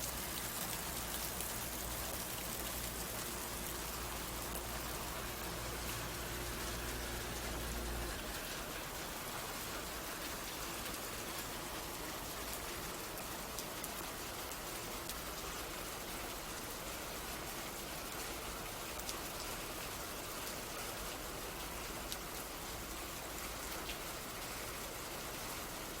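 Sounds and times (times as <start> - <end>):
steady rain falling: 0.0 - 26.0
raindrop ticks: 22.1 - 22.4.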